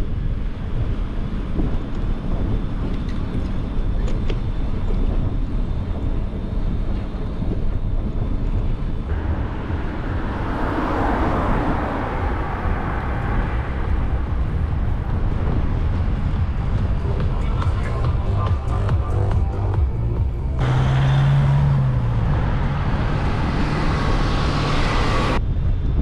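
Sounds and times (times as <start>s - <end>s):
street traffic: 0.0s - 26.0s
wind rumbling on microphone: 0.0s - 26.0s
motor vehicle passing: 9.1s - 25.4s.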